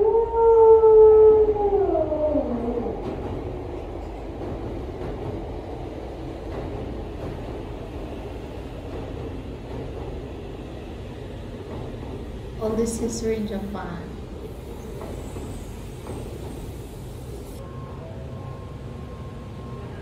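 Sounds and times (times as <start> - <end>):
train running noise: 1.6 - 20.0
train high pitched tone: 17.5 - 20.0.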